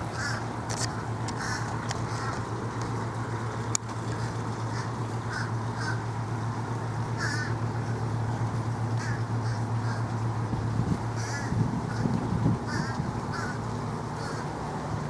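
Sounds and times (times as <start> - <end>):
steady low hum: 0.0 - 15.0
crow-like caws: 0.1 - 0.5, 1.3 - 2.4, 4.7 - 6.0, 7.2 - 7.6, 9.0 - 10.2, 11.2 - 12.1, 12.7 - 14.5.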